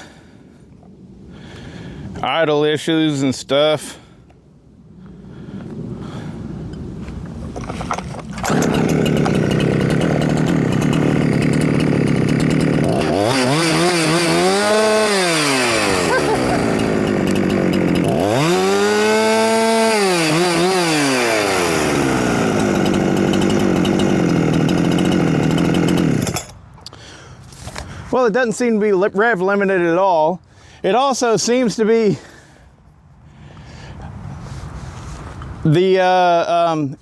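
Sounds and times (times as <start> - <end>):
chainsaw engine revving: 7.6 - 26.6.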